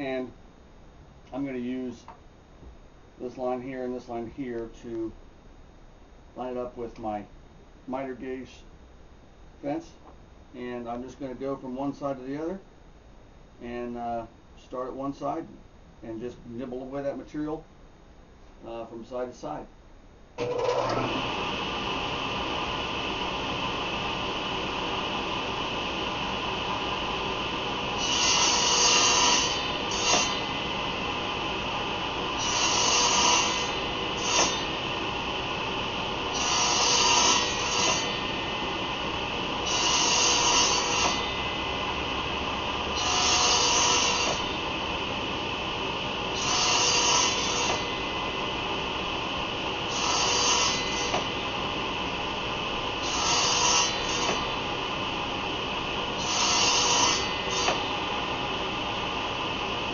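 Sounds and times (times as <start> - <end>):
table saw running: 20.4 - 59.9
saw cutting wood: 28.0 - 30.6, 32.4 - 34.8, 36.3 - 38.4, 39.6 - 41.5, 43.0 - 44.6, 46.3 - 48.1, 49.8 - 51.4, 53.0 - 54.6, 56.2 - 58.0.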